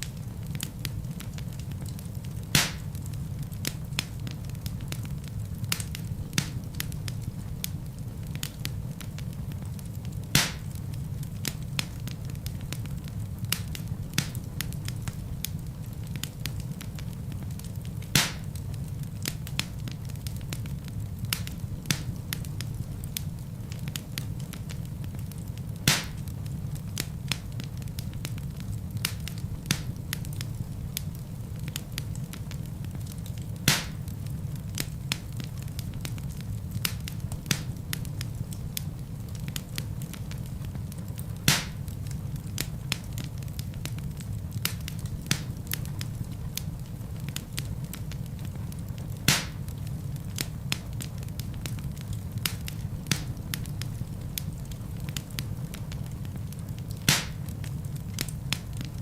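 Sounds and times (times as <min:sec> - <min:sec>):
low rumble of flames: 0:00.0 - 0:59.0
wood fire crackling: 0:00.0 - 0:59.0
loud wood pops: 0:02.6 - 0:02.9, 0:10.4 - 0:10.6, 0:18.2 - 0:18.5, 0:25.9 - 0:26.2, 0:33.7 - 0:34.0, 0:41.5 - 0:41.8, 0:49.3 - 0:49.6, 0:57.1 - 0:57.4.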